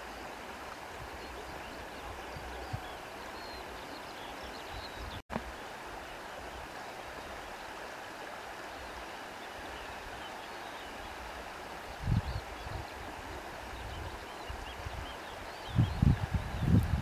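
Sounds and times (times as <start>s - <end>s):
wind blowing through grass: 0.0s - 7.4s, 9.5s - 17.0s
wind buffeting microphone: 12.0s - 17.0s.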